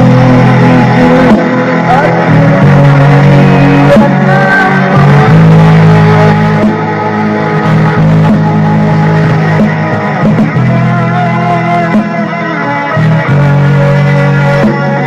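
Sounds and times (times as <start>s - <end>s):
rock song on guitars: 0.0s - 15.0s.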